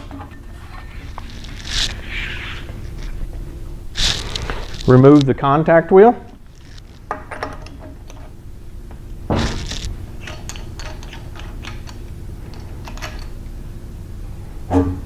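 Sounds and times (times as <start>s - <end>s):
metal scrape: 0.0s - 3.1s
metal parts clicking and clinking: 9.6s - 13.4s.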